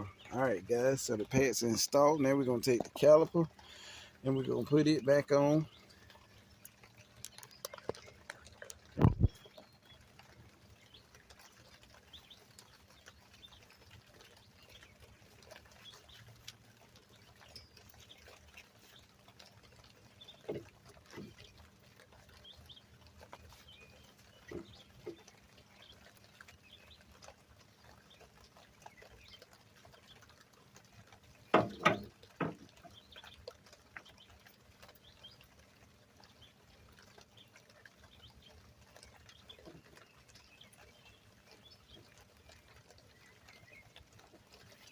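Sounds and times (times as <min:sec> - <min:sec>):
metal parts knocking and clunking: 0:31.6 - 0:32.7.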